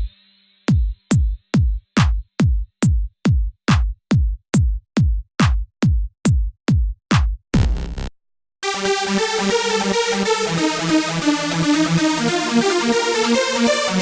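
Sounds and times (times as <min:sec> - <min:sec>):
drum machine kick drum beat: 0:00.7 - 0:08.0.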